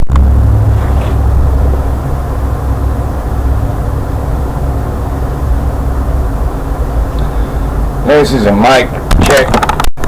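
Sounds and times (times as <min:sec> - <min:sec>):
faint hum: 0:00.0 - 0:09.8
low rumbling background noise: 0:00.0 - 0:10.0.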